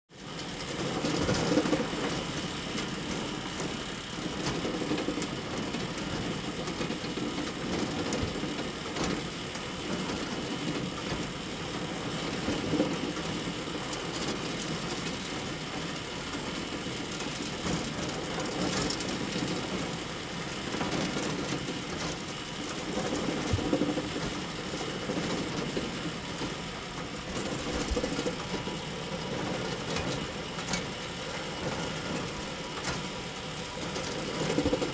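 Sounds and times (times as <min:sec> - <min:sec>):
bale elevator rattling: 0:16.4 - 0:34.9.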